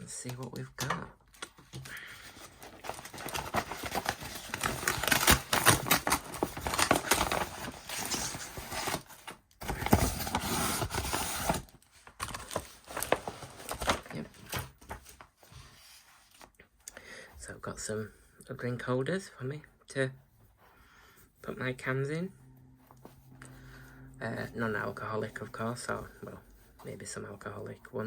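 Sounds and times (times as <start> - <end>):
packaging being torn open: 2.7 - 9.1.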